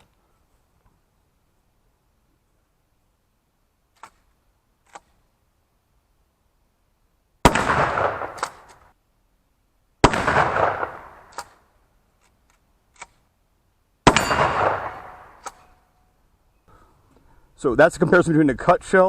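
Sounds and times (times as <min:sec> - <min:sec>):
shotgun shots reverberating: 0:07.4 - 0:08.8, 0:10.0 - 0:11.6, 0:14.0 - 0:15.7.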